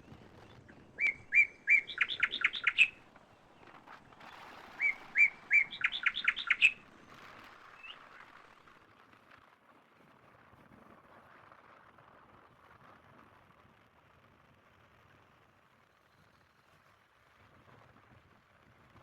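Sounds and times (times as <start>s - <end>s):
songbird singing: 0.1s - 8.2s.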